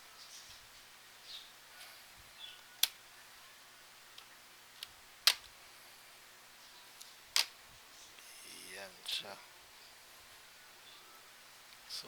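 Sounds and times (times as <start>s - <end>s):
plastic clips popping loose: 4.2s - 5.5s.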